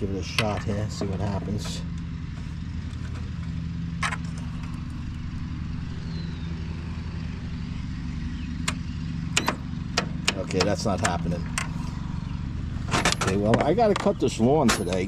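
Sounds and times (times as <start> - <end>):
low engine-like hum: 0.0 - 15.0
starter solenoid clicking: 8.5 - 11.9.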